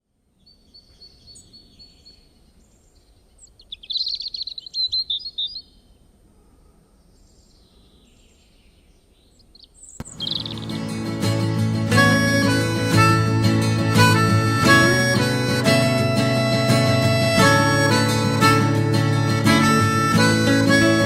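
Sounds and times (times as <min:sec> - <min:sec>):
birds chirping and singing: 0:00.4 - 0:06.0, 0:07.0 - 0:14.6
rapid trilled bird chirps: 0:00.4 - 0:06.0, 0:09.2 - 0:14.5
music with harmonica: 0:10.0 - 0:21.0.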